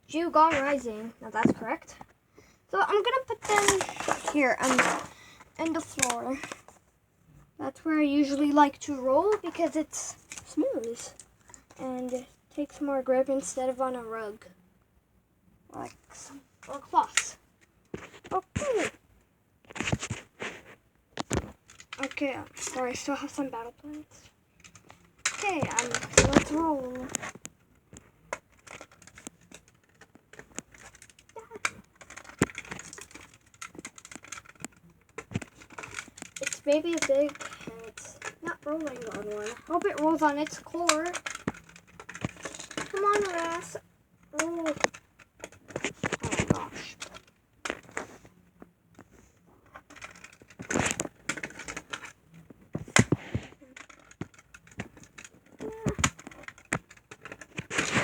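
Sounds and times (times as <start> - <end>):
plastic toy clicking on floor: 2.8 - 6.8, 21.2 - 48.1, 49.7 - 58.0.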